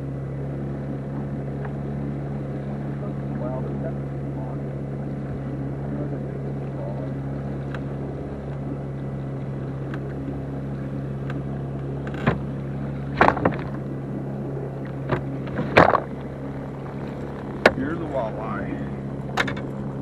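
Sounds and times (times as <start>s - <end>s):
outboard motor humming: 0.0s - 20.0s
short sharp knocks: 13.2s - 13.8s, 14.9s - 17.8s.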